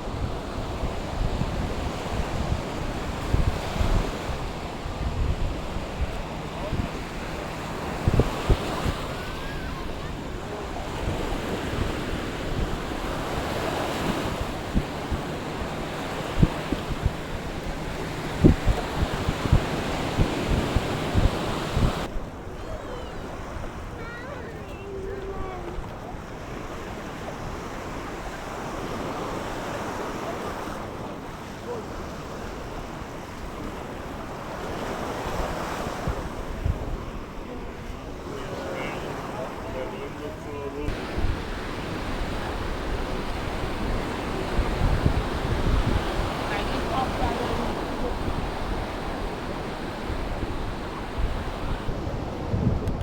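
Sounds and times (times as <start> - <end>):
wind thumping on microphone: 0.0 - 22.3, 35.2 - 38.2, 40.8 - 53.0
surf washing onto beach: 0.0 - 53.0.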